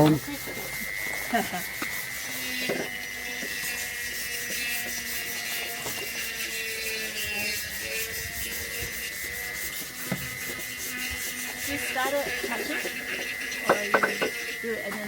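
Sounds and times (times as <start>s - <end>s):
sandpaper rubbing on bamboo: 0.0s - 15.0s.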